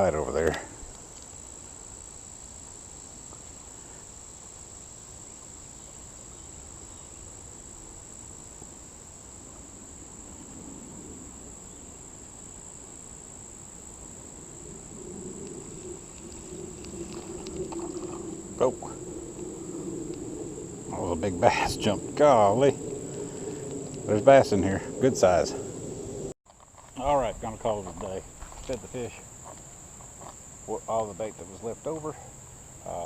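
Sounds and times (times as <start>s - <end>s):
faint background hiss: 0.0s - 33.0s
insects droning: 0.0s - 33.0s
soft low rumble: 14.5s - 26.4s.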